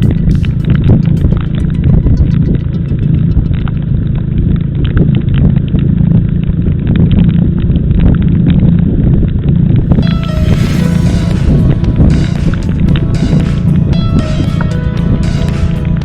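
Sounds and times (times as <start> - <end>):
car engine and road rumble: 0.0 - 16.0.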